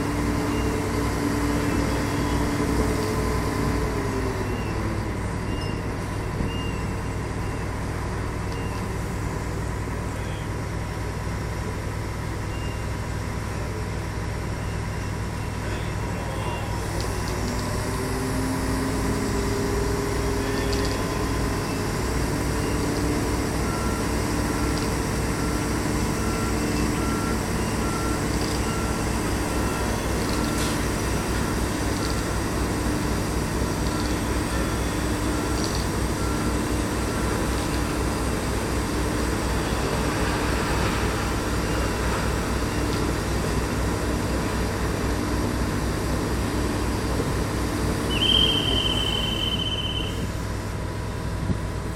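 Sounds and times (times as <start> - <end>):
diesel engine drone: 0.0 - 51.9
warning alarm beeping: 48.1 - 50.3.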